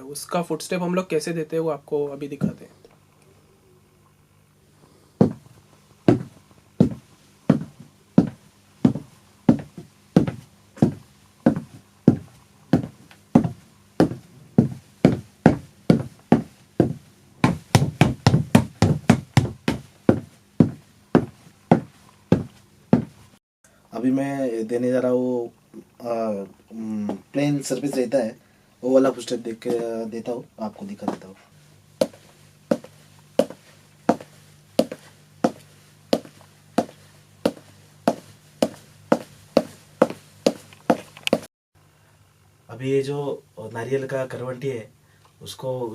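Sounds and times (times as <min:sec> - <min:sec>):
footsteps on wooden floor: 0:05.2 - 0:05.5, 0:06.1 - 0:23.2, 0:29.6 - 0:29.9, 0:32.0 - 0:41.5.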